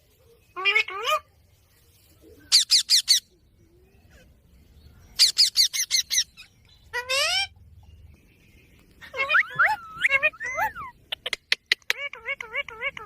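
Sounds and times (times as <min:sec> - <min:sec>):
parakeet squawking: 0:05.2 - 0:07.5, 0:09.1 - 0:13.0.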